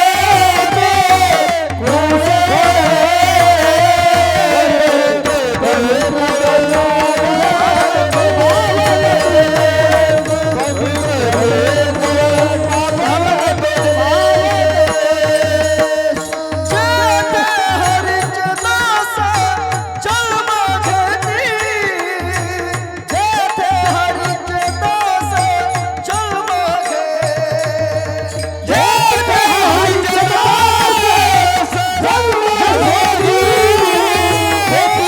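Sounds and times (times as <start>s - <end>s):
person singing devotional melody: 0.0s - 35.0s
hand drum beating: 0.3s - 17.2s.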